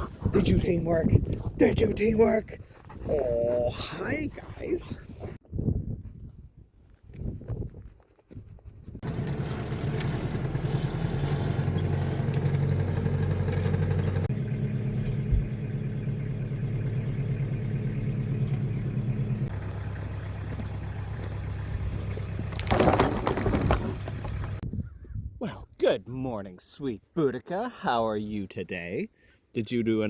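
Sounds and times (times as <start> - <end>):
engine running steadily: 9.0 - 24.6.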